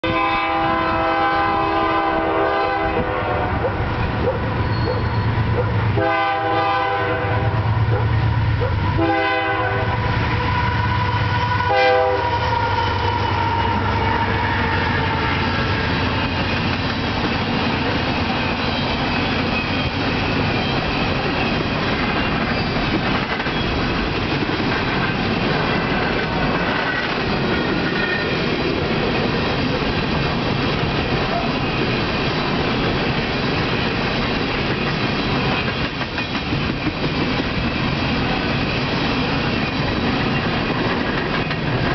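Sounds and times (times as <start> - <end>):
train horn blasts: 0.0 - 3.8, 5.9 - 8.0, 8.9 - 15.8
locomotive engines passing: 0.5 - 41.9
train wheels clickety-clack: 11.0 - 41.9.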